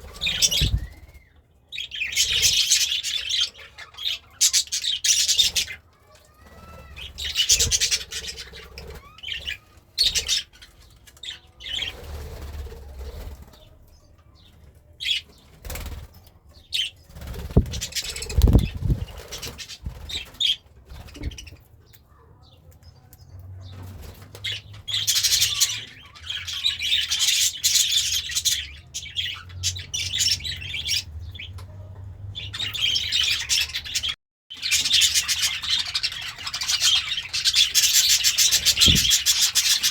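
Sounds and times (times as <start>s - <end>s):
bird wings fluttering and rustling: 0.0s - 1.2s, 17.1s - 21.5s, 38.5s - 39.9s
bird chirps: 0.0s - 12.1s, 16.6s - 23.1s.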